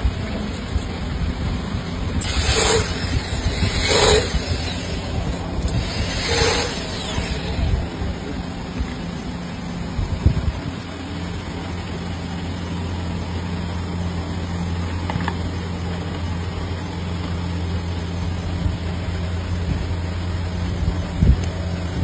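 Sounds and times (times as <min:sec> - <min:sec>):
electric motor humming: 0:01.8 - 0:09.2.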